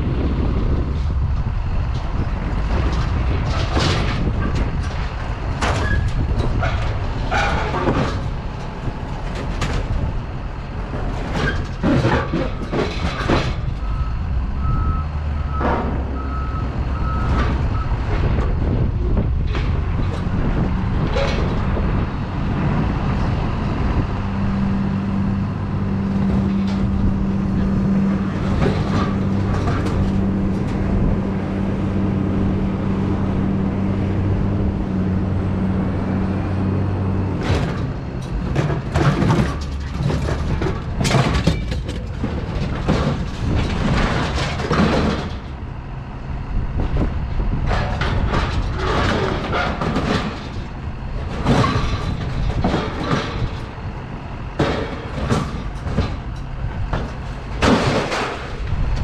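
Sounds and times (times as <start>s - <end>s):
vehicle engine humming: 0.0s - 59.0s
knocks and clattering: 1.9s - 10.2s, 10.8s - 14.0s, 26.1s - 30.9s, 37.4s - 45.6s, 46.8s - 59.0s.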